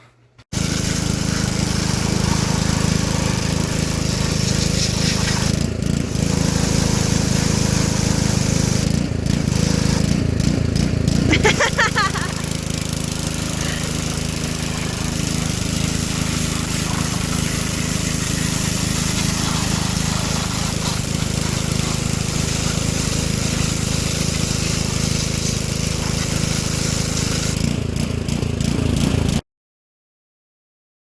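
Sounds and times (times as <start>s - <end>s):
motor running with hum: 0.5s - 29.4s
constant rushing noise: 12.2s - 23.8s.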